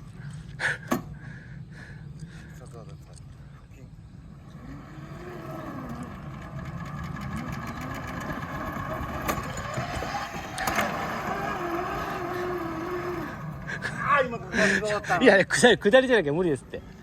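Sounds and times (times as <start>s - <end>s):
engine speed wavering: 4.0s - 17.0s.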